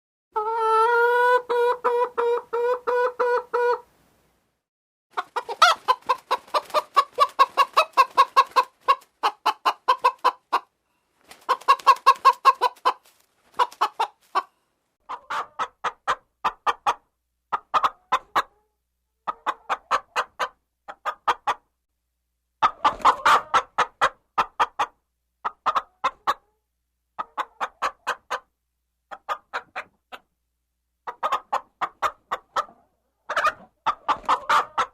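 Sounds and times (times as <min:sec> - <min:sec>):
long steady-pitched hen call: 0:00.3 - 0:03.9, 0:05.1 - 0:10.7, 0:11.5 - 0:21.6, 0:22.6 - 0:26.6, 0:31.0 - 0:34.9
hens clucking: 0:00.4 - 0:03.9, 0:05.1 - 0:21.7, 0:22.6 - 0:26.5, 0:27.1 - 0:28.5, 0:29.1 - 0:30.3, 0:31.0 - 0:34.9.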